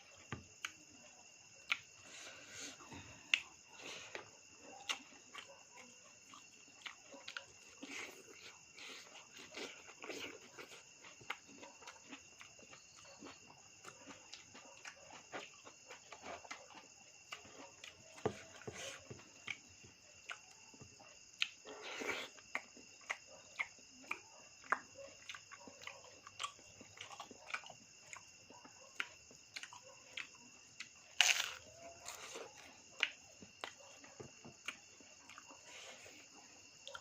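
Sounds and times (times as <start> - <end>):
insects chirring: 0.0 - 37.0
chewing smacks and clicks: 1.6 - 1.9, 4.2 - 18.1, 21.4 - 35.7.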